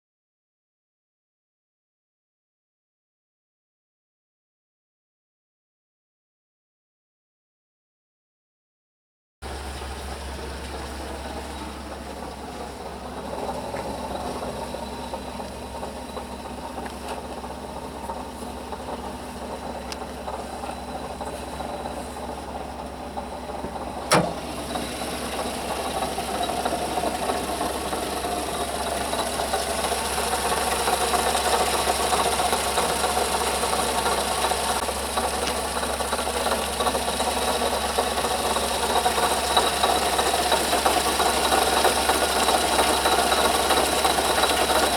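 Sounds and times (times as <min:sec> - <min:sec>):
vehicle engine running: 0:09.4 - 0:44.9
water pump scraping and rattling: 0:09.5 - 0:44.9.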